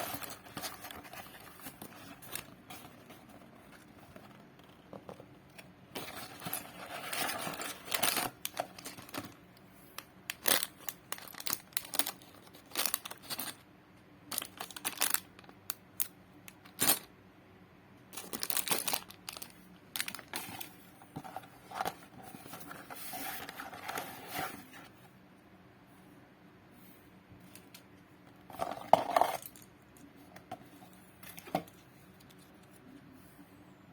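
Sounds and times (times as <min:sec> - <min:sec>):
packaging crinkling and tearing: 0:06.0 - 0:09.4, 0:10.3 - 0:13.6, 0:14.3 - 0:15.6, 0:18.2 - 0:20.8.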